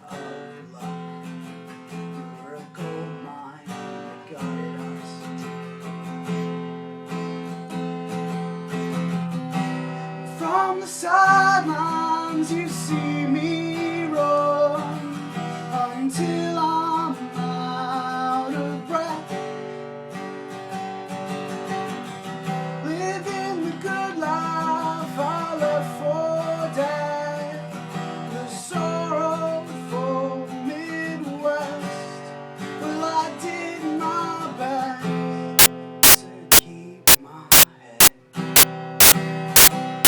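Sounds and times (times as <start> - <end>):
loud sharp clicks: 36.0 - 37.6, 39.0 - 39.7.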